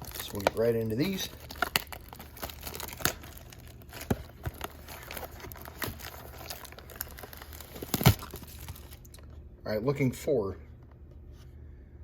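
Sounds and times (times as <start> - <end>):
packaging tearing and crinkling: 0.0 - 9.2
plastic wrap crackles: 0.0 - 9.2.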